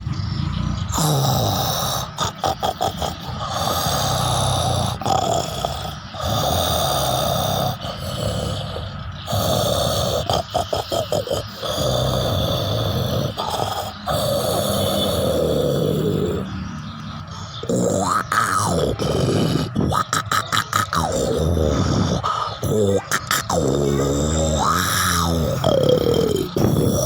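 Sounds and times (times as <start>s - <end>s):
person snoring loudly: 0.0s - 16.6s, 17.6s - 27.0s.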